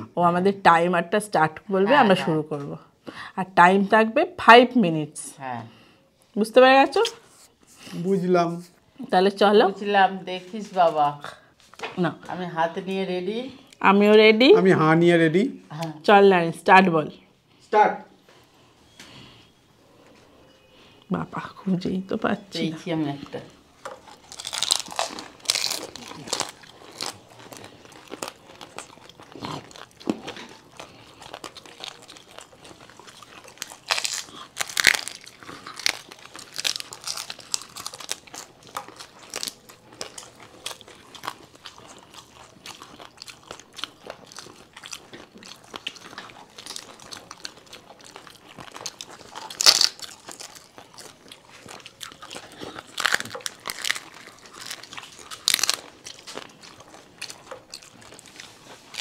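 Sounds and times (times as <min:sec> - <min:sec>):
crisp food crunching: 0:23.8 - 0:59.0.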